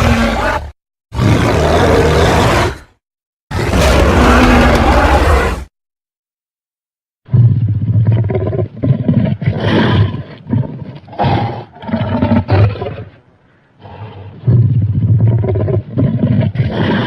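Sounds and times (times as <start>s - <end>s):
monster roaring: 0.0s - 2.9s, 3.5s - 5.7s.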